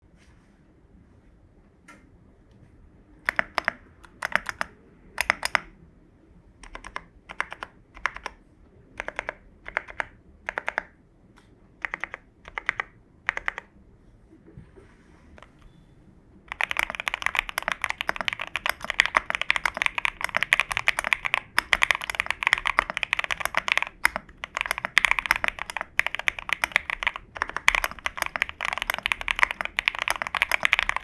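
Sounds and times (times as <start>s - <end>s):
mechanical keyboard typing: 3.2s - 5.7s, 6.6s - 8.4s, 9.0s - 11.0s, 11.8s - 13.7s, 16.5s - 31.0s.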